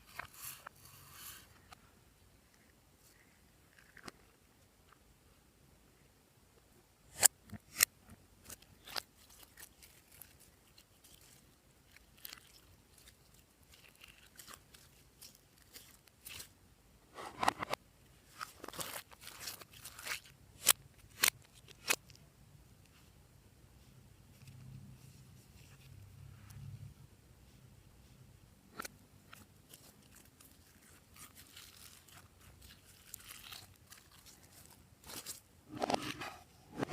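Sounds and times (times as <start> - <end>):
slime crackling: 8.4 - 16.6, 18.3 - 22.1, 28.7 - 35.5.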